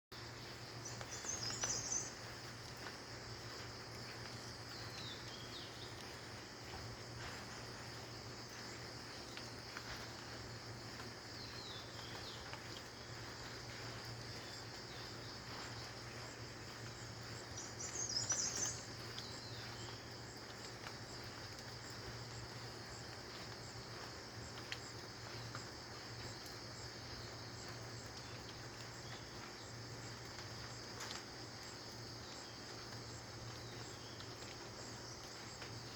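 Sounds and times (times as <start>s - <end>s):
insect chorus drone: 0.2s - 35.9s
bird chirping: 0.8s - 2.5s, 10.9s - 20.2s.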